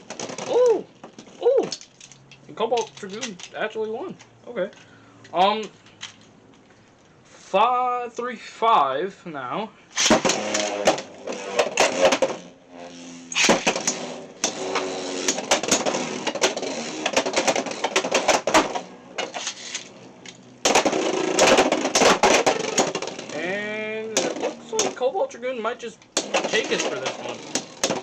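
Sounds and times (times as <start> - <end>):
spinning tops clashing: 10.0 - 20.0, 20.7 - 23.6
spinning tops humming: 10.0 - 25.0, 26.2 - 28.0.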